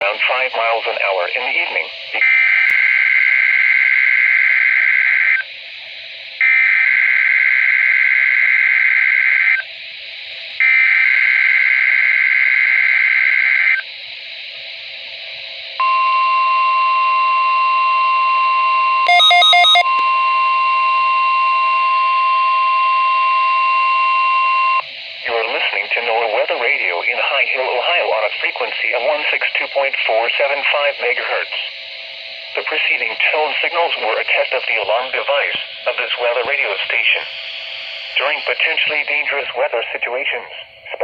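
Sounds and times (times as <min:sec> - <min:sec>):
radio hiss: 0:00.0 - 0:02.7, 0:21.6 - 0:41.0
steady warning alarm tone: 0:00.0 - 0:40.8
stutter of beeps: 0:15.8 - 0:31.5
warbling data screech: 0:19.1 - 0:19.8.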